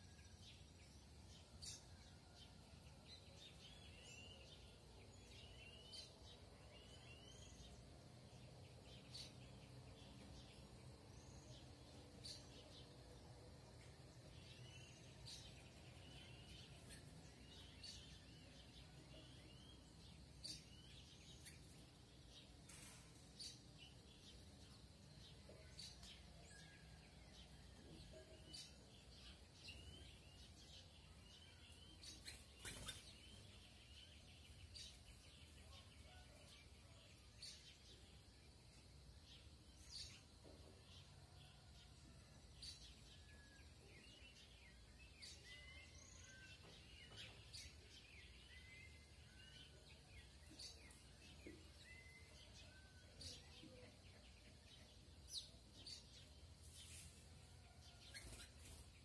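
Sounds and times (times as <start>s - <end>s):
birds chirping: 0.0s - 59.0s.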